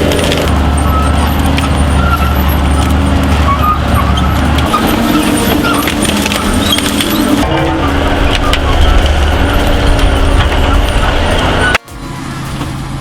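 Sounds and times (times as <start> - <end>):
diesel engine running under load: 0.0 - 13.0.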